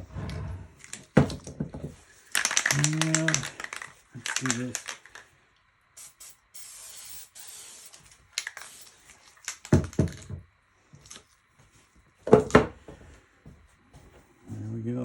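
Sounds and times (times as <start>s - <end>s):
spray can hissing: 2.2s - 5.2s, 6.0s - 10.2s
scattered clicks: 2.3s - 5.3s.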